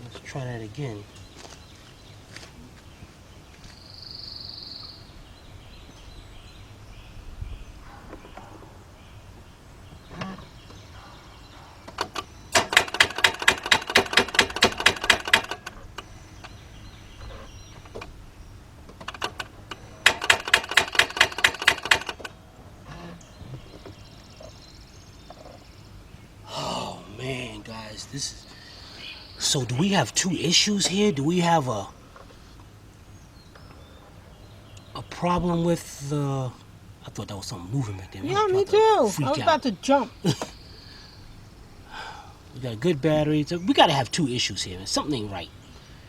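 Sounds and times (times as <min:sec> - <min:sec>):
car starter rapid clicking: 0:12.0 - 0:16.6, 0:19.0 - 0:22.3.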